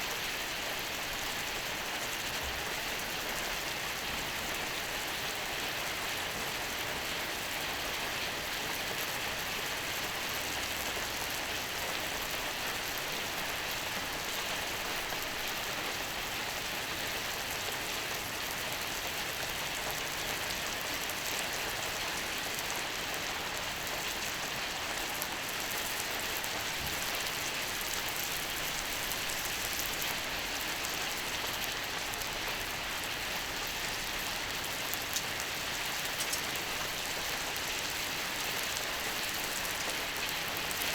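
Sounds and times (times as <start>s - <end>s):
steak sizzling on a griddle: 21.0s - 40.9s.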